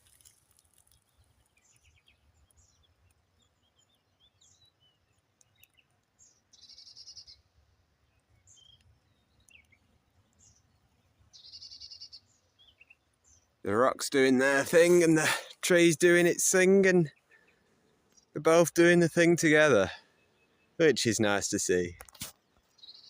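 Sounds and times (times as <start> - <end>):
faint bird chirps: 0.8 - 13.6, 19.9 - 23.0.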